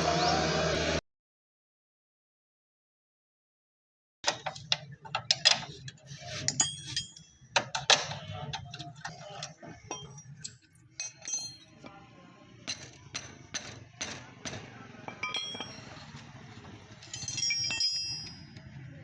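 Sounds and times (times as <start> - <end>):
metallic tool clicks and clinks: 6.4 - 11.8, 17.0 - 18.6.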